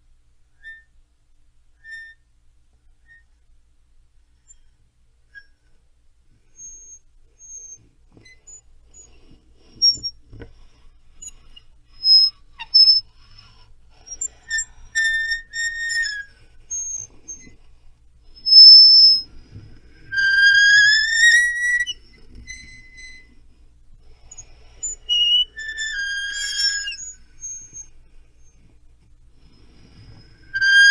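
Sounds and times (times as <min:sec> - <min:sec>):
rubber duck toy squeaking: 0:09.8 - 0:10.2, 0:11.2 - 0:17.5, 0:18.4 - 0:19.3, 0:20.1 - 0:23.4, 0:24.4 - 0:27.9, 0:30.5 - 0:30.9.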